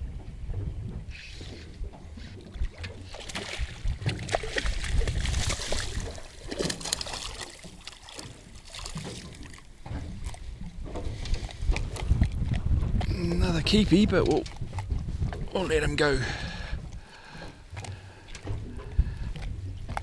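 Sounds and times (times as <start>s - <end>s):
wind on microphone: 0.0s - 7.2s, 9.8s - 20.0s
water splashing around boat: 0.0s - 20.0s.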